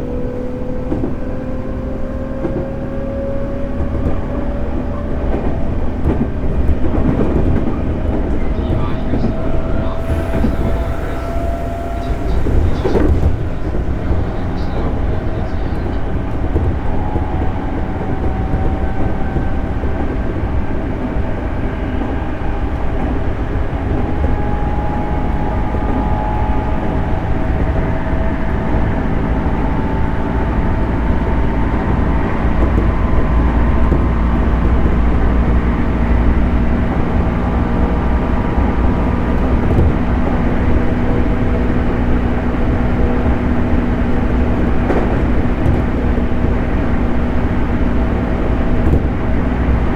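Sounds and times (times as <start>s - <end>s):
train wheels rumbling on rail: 0.0s - 49.9s
steady hum tones: 8.5s - 16.0s.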